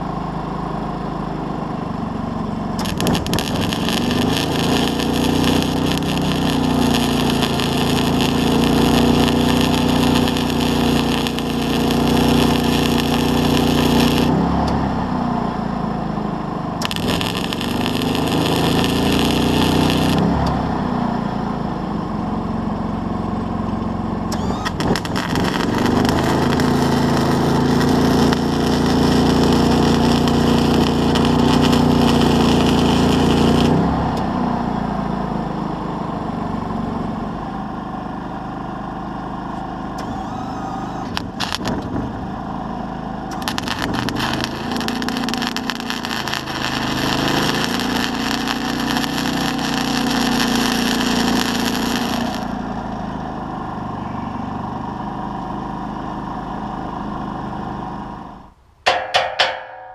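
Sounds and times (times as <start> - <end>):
engine running: 0.0 - 59.9
hiss: 46.4 - 52.4.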